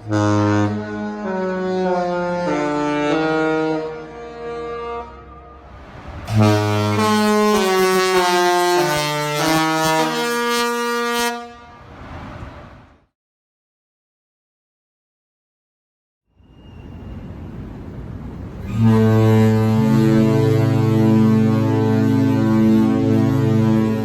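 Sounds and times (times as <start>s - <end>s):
ship melody horn playing a tune: 0.0s - 12.0s, 18.6s - 24.0s.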